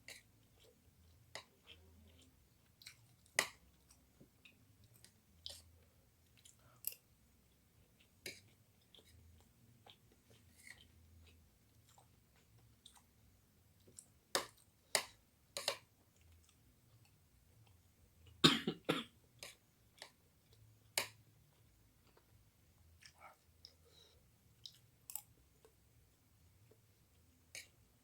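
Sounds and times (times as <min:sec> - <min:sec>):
person coughing: 0:18.4 - 0:19.1.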